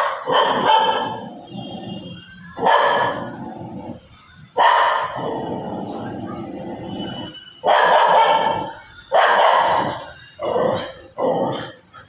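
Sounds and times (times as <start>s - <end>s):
dog barking: 0.0s - 1.4s, 2.6s - 3.4s, 4.6s - 5.4s, 7.6s - 11.7s.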